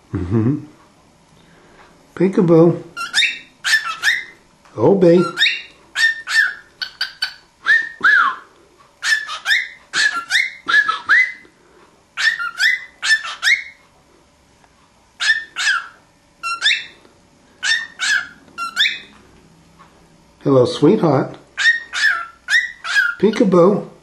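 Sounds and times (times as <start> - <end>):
cockatiel whistling and chirping: 3.0 - 4.4, 5.2 - 8.4, 9.0 - 11.5, 12.2 - 13.8, 15.2 - 17.0, 17.6 - 19.1, 21.6 - 23.3.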